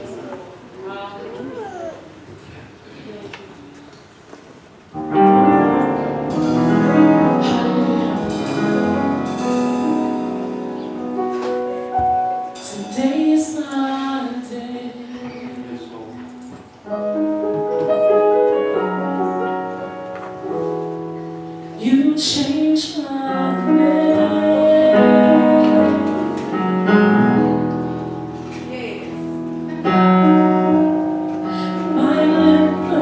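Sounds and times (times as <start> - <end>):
solo voice singing: 7.2 - 9.2, 12.6 - 15.9, 21.8 - 26.7, 31.5 - 33.0.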